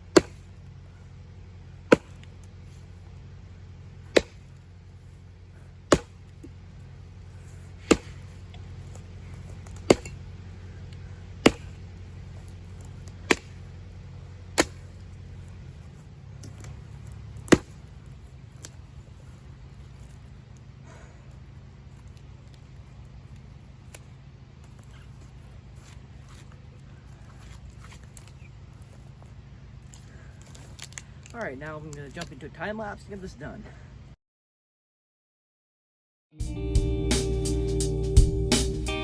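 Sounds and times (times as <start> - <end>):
axe chopping branches: 0.0 - 1.0, 1.6 - 3.2, 3.9 - 21.2.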